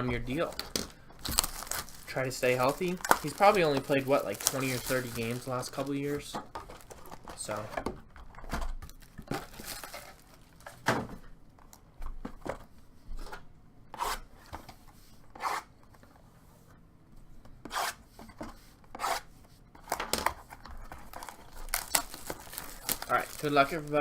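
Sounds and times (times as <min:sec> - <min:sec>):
cardboard and plastic wrap scraping: 0:00.3 - 0:07.6, 0:08.9 - 0:10.8, 0:20.8 - 0:24.0.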